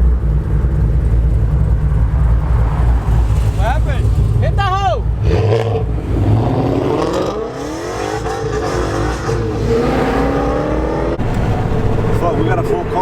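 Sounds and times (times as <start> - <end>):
car engine accelerating past: 1.8 - 4.5, 5.1 - 12.2.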